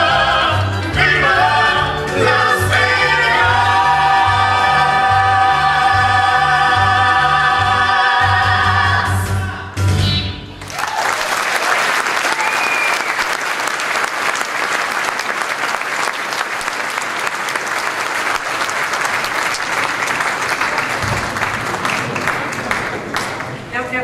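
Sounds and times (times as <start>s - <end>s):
audience applauding: 10.6s - 23.7s.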